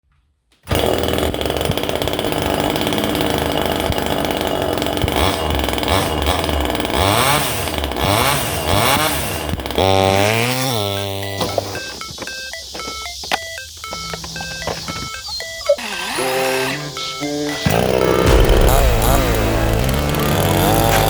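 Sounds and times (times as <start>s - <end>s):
chainsaw engine revving: 0.7s - 13.3s, 13.9s - 21.0s
different pitched sound: 11.2s - 21.0s.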